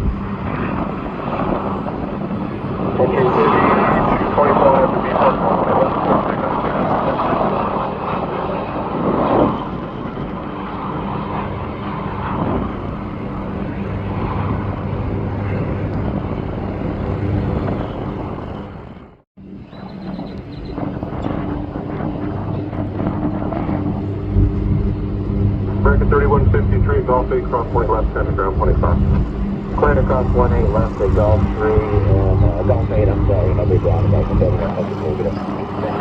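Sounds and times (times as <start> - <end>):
jet engine rushing: 0.0 - 36.0
constant low hum: 7.2 - 36.0.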